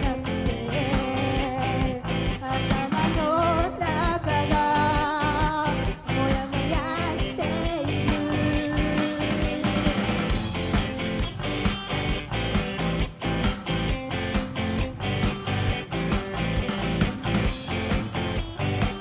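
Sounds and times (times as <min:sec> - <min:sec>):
bass guitar: 0:00.0 - 0:19.0
drums: 0:00.0 - 0:19.0
electric guitars: 0:00.0 - 0:19.0.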